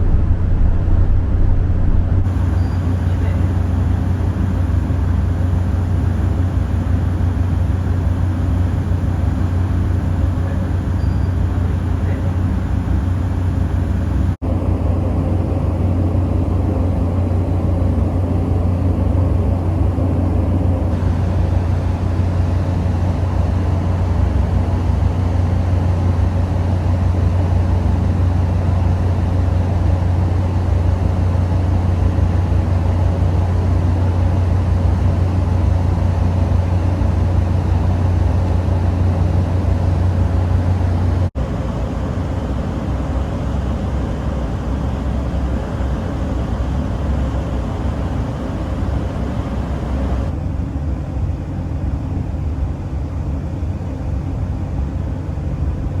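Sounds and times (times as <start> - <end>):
ship engine drone: 0.0 - 50.6
constant low hum: 0.0 - 56.0.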